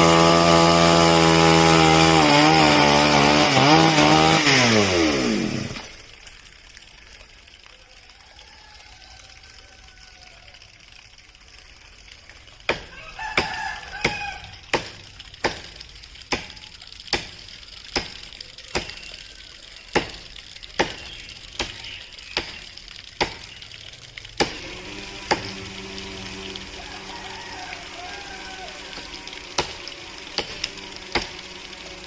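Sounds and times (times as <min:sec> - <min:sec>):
chopping into wood: 0:12.7 - 0:17.4, 0:18.0 - 0:19.1, 0:19.9 - 0:23.5, 0:24.4 - 0:25.6, 0:29.0 - 0:31.4.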